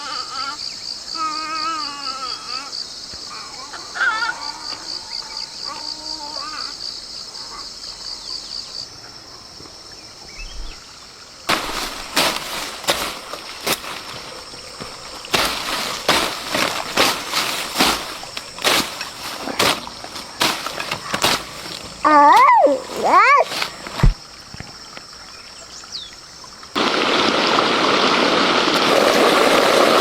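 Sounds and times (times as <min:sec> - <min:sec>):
insect trilling: 0:00.0 - 0:09.4, 0:10.2 - 0:26.7
loud rustling or scuffing: 0:11.5 - 0:24.2.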